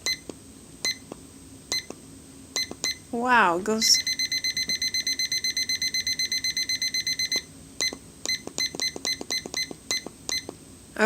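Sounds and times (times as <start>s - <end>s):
rapid high-pitched timer beeps: 3.9s - 10.5s.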